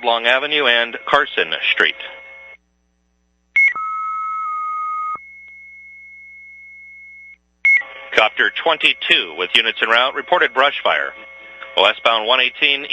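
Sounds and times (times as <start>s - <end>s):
radio alert beep: 7.7s - 12.9s.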